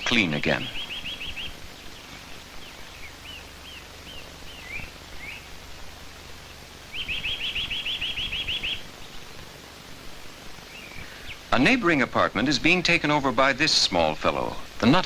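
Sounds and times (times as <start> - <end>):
fast bird trill: 0.0 - 5.6, 6.3 - 9.4
bird chirping: 0.0 - 15.0.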